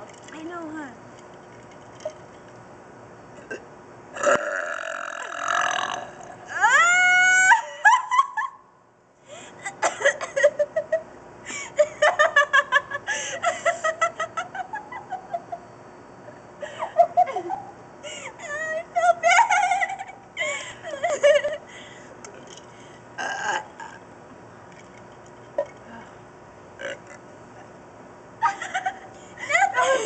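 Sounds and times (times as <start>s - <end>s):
person burping loudly: 3.4s - 3.6s, 4.2s - 6.5s, 23.2s - 24.1s, 26.8s - 27.2s
giggling laughter: 7.5s - 8.6s, 9.6s - 15.6s, 16.6s - 21.7s, 28.4s - 30.0s.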